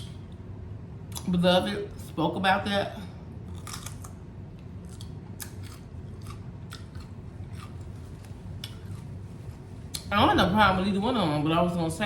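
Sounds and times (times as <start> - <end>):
person chewing crunchy food: 3.4 - 10.1.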